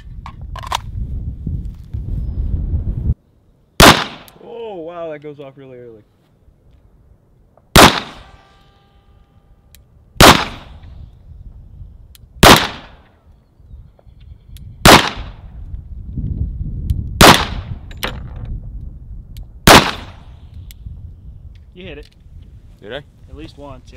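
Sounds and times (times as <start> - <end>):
pistol shots: 3.8 - 4.4, 7.7 - 8.3, 10.2 - 10.8, 12.4 - 13.0, 14.8 - 15.4, 17.2 - 17.7, 19.7 - 20.3.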